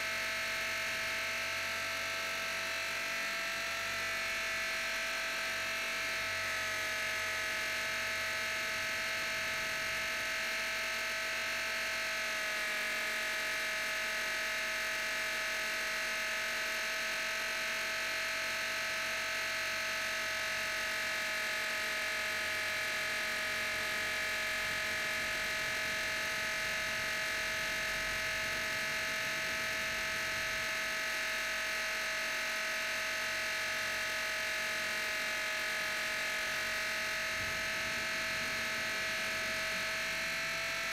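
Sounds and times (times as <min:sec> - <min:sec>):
rc helicopter motor whine: 0:00.0 - 0:40.9.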